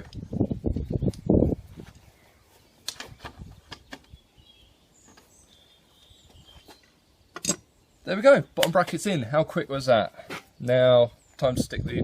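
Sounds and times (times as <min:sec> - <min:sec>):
bird chirps: 0:00.3 - 0:08.3.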